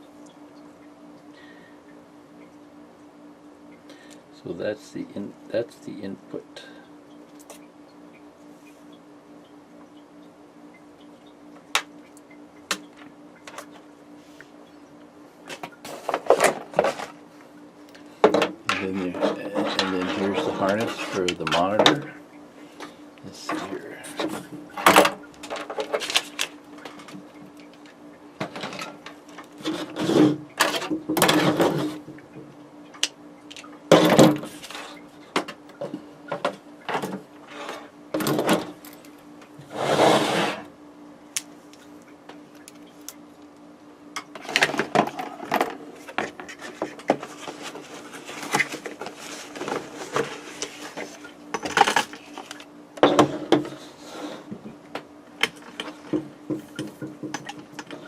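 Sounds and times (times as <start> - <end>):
steady low hum: 0.0 - 58.0
clicks and knocks of handling parts: 33.0 - 37.2, 44.2 - 53.7
rubbing rustle: 46.0 - 51.2.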